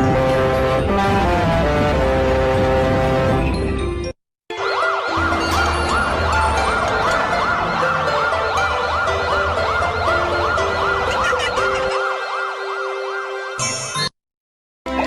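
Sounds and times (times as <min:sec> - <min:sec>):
siren wailing: 0:04.5 - 0:13.6.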